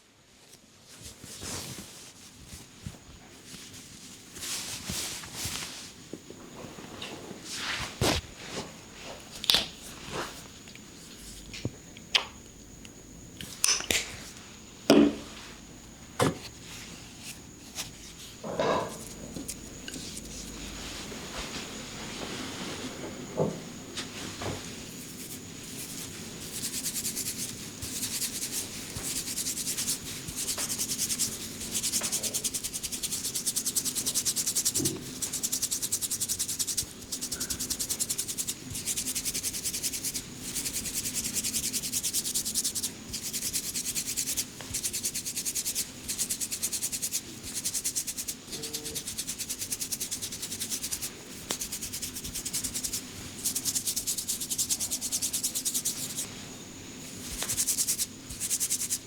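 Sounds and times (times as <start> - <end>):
hands rubbing hair and scalp: 0.9 - 6.0, 7.5 - 8.7, 24.0 - 56.4, 57.0 - 59.0.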